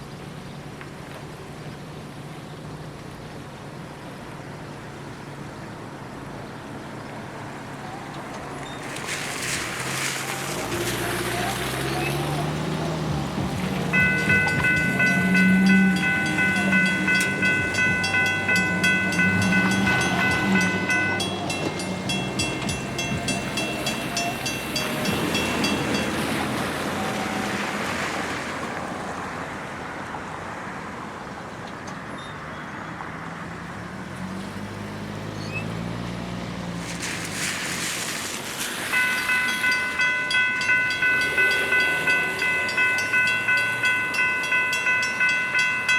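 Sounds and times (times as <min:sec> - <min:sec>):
railroad crossing bell ringing: 0:11.3 - 0:27.8, 0:38.6 - 0:45.9.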